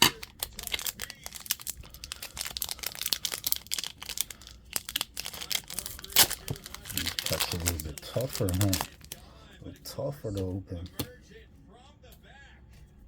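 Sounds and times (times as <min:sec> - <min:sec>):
foil pack crinkling and tearing: 0:00.0 - 0:09.2.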